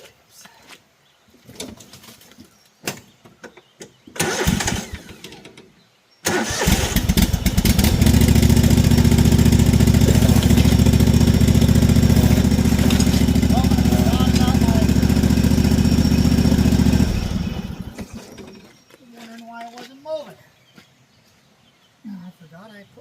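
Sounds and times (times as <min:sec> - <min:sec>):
mower engine cranking and running: 0:04.2 - 0:18.8.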